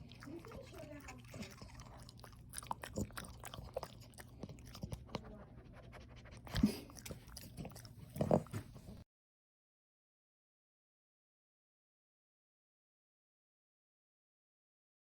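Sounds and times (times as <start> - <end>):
puppy chewing: 0.0 - 9.0.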